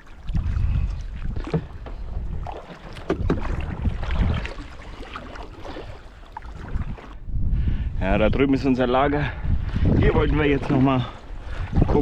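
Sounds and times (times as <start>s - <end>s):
wind buffeting microphone: 0.0s - 4.7s, 5.8s - 12.0s
paddle strokes in water: 0.0s - 7.2s.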